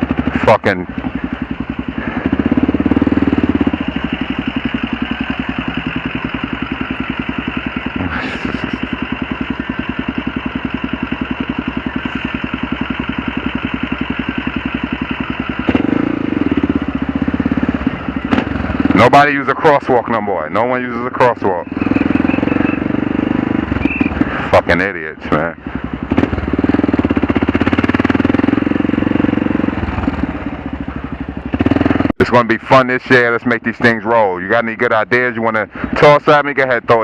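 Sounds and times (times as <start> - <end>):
motorcycle engine running: 0.0 - 37.0.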